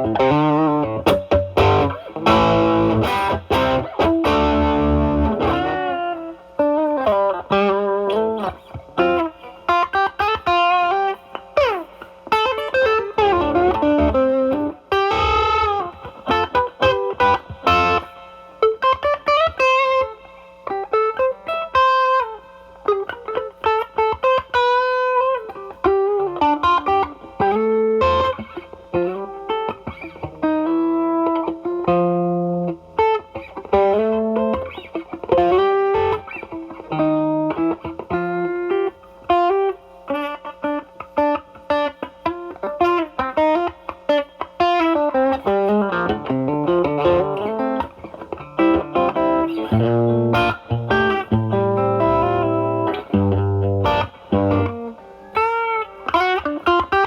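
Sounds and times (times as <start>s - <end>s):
overdriven electric guitar: 0.0s - 57.0s.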